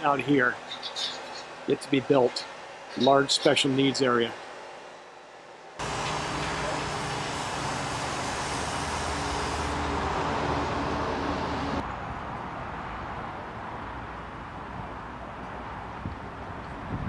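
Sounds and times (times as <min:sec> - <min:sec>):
engine running with low hum: 0:05.8 - 0:11.8.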